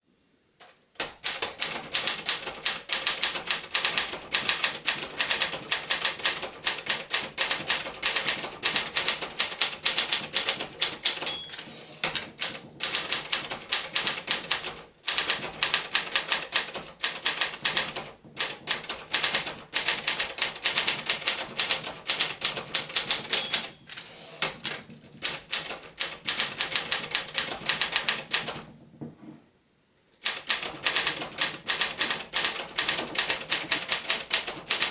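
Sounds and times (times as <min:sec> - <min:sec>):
typewriter bell ringing: 0:11.0 - 0:13.3, 0:23.1 - 0:24.8.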